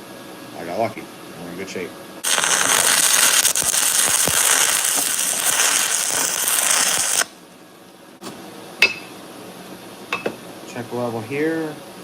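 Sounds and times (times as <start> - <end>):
welding arc crackling: 2.2 - 7.4.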